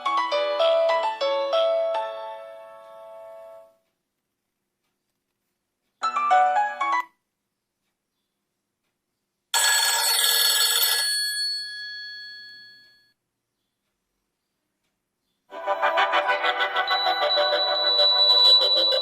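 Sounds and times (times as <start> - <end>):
bright shimmering chime: 16.9 - 19.0
short melodic phone tone: 16.9 - 19.0.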